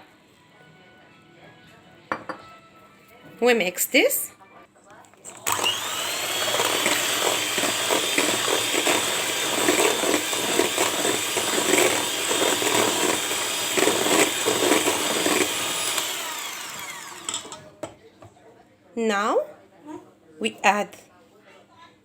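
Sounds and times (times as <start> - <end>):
electric mixer whining: 5.3 - 17.8
beaters clattering in bowl: 17.1 - 18.0.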